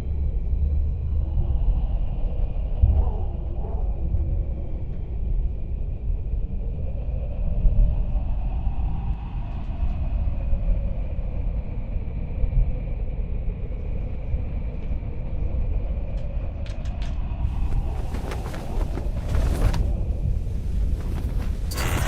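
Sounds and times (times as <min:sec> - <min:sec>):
sharp crackles: 0:17.5 - 0:22.0.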